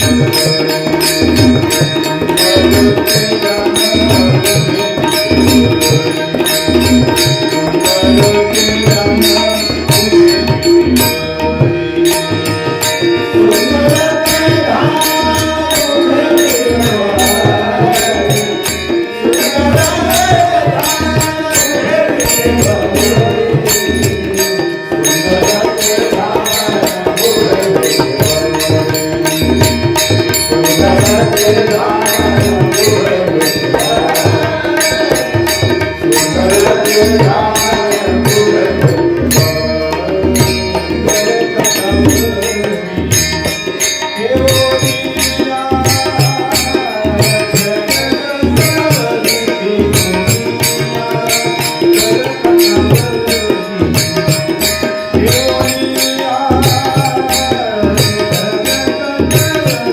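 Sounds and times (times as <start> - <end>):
man singing devotional melody: 0.0 - 59.9
tabla rhythm: 0.0 - 59.9.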